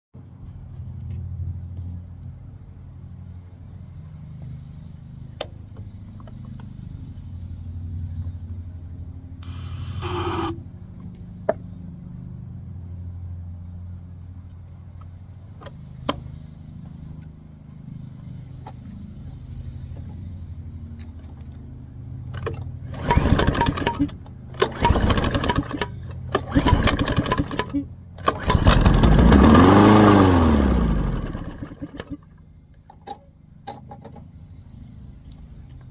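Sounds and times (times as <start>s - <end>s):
lawnmower engine puttering: 9.4s - 10.6s, 22.3s - 34.4s
short hissing rush: 9.4s - 10.6s.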